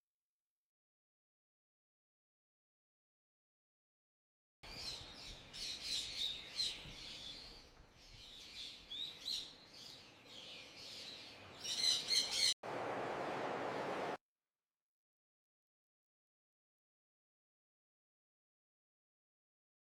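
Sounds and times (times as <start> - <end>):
birds chirping: 4.7 - 14.2
steady hiss: 12.7 - 14.2.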